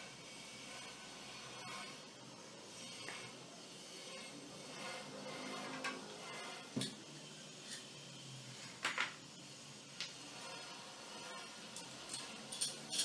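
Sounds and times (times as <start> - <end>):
metallic clinks of tools: 11.8 - 13.0.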